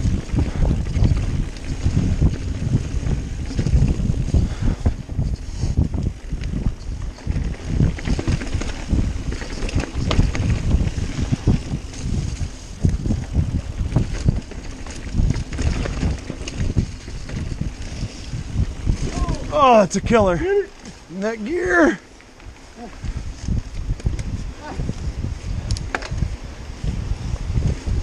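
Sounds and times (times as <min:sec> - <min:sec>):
off-road vehicle low rumble: 0:00.0 - 0:21.3
wind buffeting microphone: 0:00.0 - 0:28.0.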